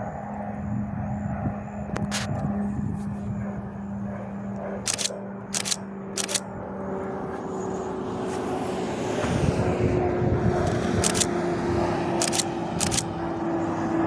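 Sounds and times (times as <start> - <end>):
engine drone: 0.0 - 14.0
camera shutter bursts: 4.9 - 6.4, 11.0 - 11.3, 12.2 - 13.1.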